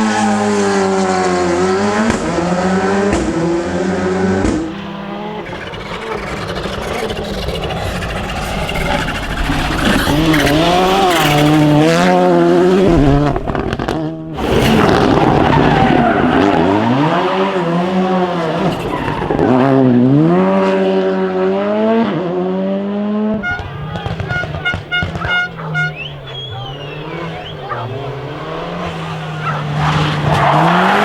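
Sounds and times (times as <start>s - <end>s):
rally car engine revving: 0.0s - 31.0s
tyres skidding: 4.5s - 20.8s, 23.3s - 31.0s.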